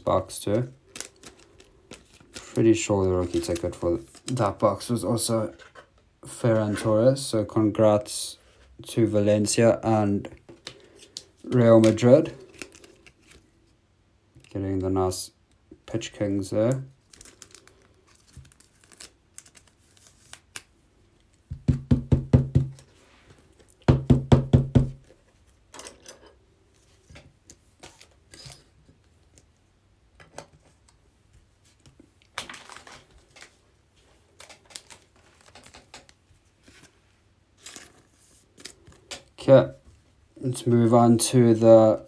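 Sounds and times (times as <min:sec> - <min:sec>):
card packaging clicks and crinkles: 0:00.8 - 0:02.6, 0:03.2 - 0:04.5, 0:10.6 - 0:13.4, 0:17.0 - 0:20.7, 0:32.3 - 0:33.6, 0:34.3 - 0:36.8.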